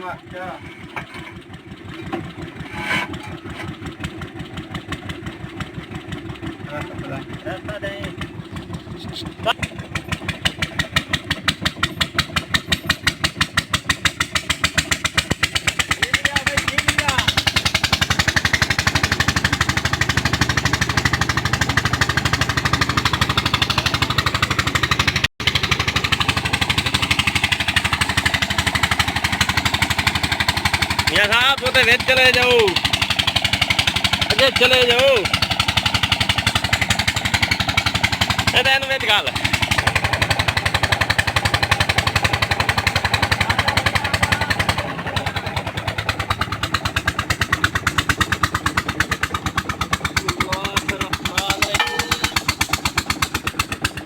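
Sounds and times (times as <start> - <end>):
boring rig engine knocking: 0.0 - 54.0
boring machine engine thudding: 0.4 - 5.2, 51.6 - 52.8.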